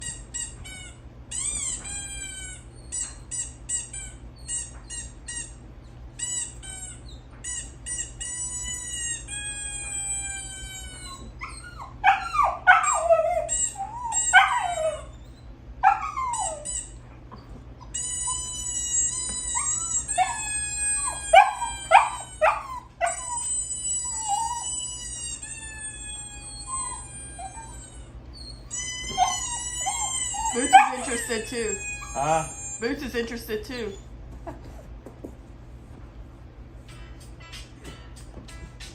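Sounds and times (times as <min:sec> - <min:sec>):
high-pitched squeaks and squeals: 0:00.0 - 0:05.6, 0:06.2 - 0:15.4, 0:17.8 - 0:34.0
puppies whining and howling: 0:00.0 - 0:35.0.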